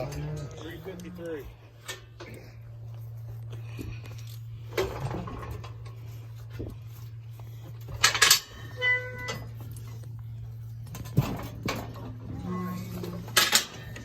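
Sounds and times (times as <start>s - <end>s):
steady low hum: 0.0s - 14.0s
steel gates clanging: 11.0s - 14.0s.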